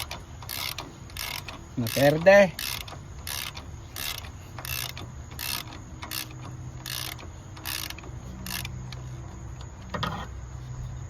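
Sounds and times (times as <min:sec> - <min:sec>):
ratchet wrench clicking: 0:00.0 - 0:10.2.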